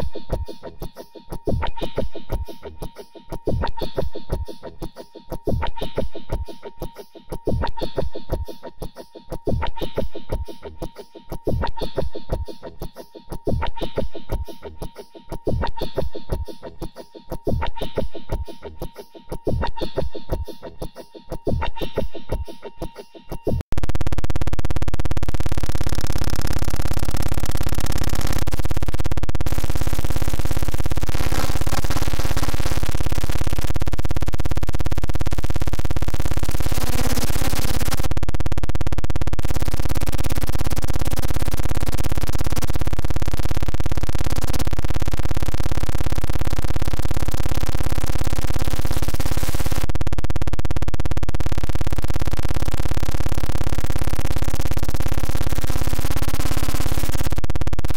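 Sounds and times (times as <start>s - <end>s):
electronic buzzing drone: 23.7s - 57.9s.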